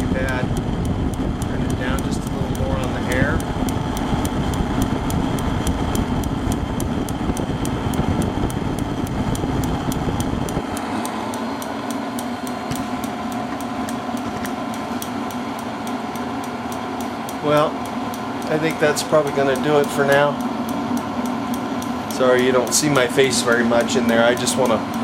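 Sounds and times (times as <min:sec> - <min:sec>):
low rumble: 0:00.0 - 0:10.8
heater burner and fan rushing: 0:00.0 - 0:25.0
igniter ticking: 0:00.0 - 0:25.0.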